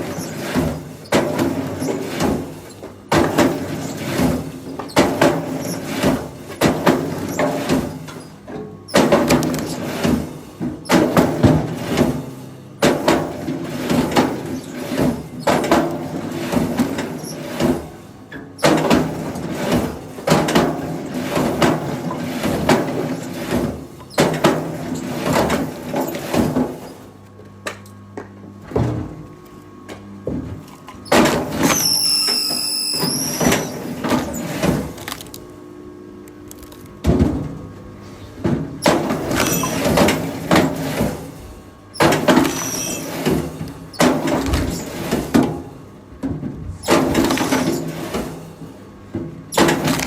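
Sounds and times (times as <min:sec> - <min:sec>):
high squeal: 0:31.7 - 0:33.8
machinery knocking and clattering: 0:38.4 - 0:41.3, 0:42.0 - 0:48.4.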